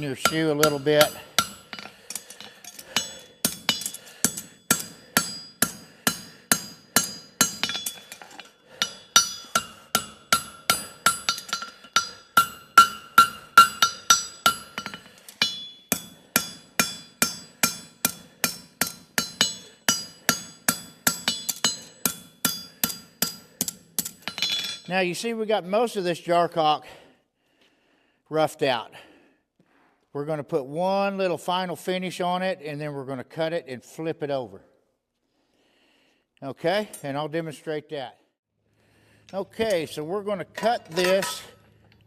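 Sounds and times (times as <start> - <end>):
hammer ringing on anvil: 0.0 - 24.9.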